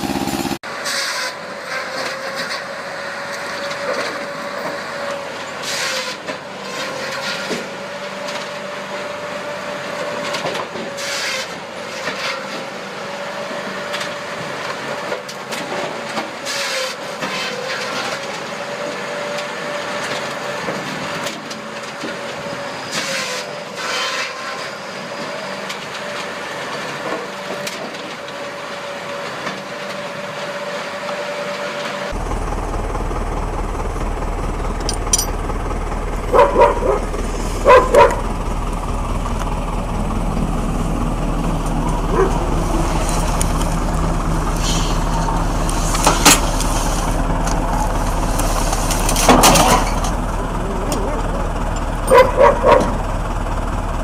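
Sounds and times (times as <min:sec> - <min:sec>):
machine droning: 0:00.0 - 0:00.6, 0:32.1 - 0:54.0
dog barking: 0:36.3 - 0:38.3, 0:42.1 - 0:42.4, 0:52.1 - 0:53.0.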